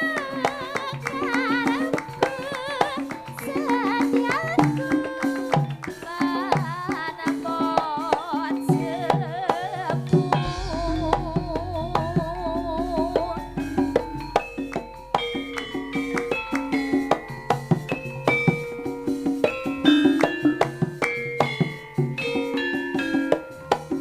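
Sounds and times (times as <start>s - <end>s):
hand drum strokes: 9.9s - 22.1s
wavering vibrato melody: 10.2s - 20.6s
deep sustained low tone: 10.3s - 17.4s.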